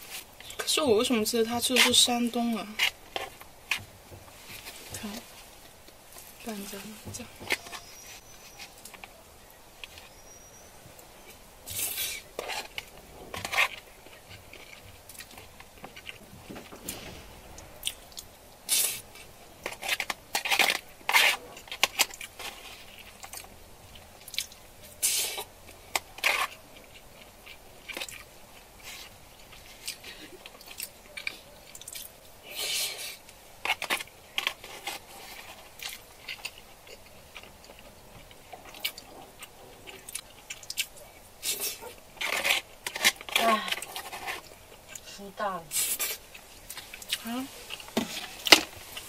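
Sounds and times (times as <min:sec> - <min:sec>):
person chewing food: 0:17.2 - 0:45.1, 0:45.8 - 0:49.0.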